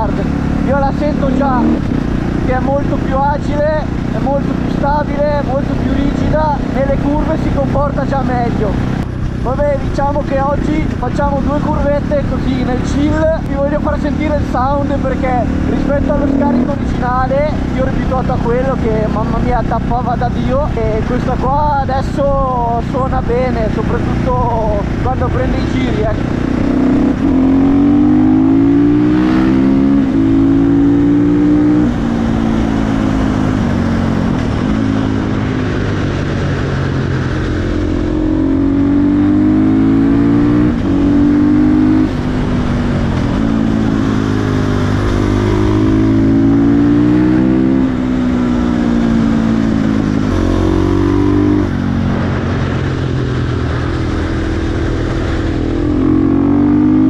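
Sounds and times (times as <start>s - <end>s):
motorcycle engine revving through gears: 0.0s - 19.8s, 24.7s - 57.0s.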